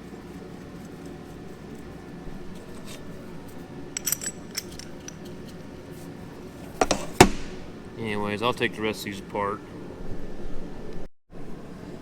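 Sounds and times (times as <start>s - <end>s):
metal parts clinking: 2.5s - 5.7s
sharp knock: 6.8s - 7.7s.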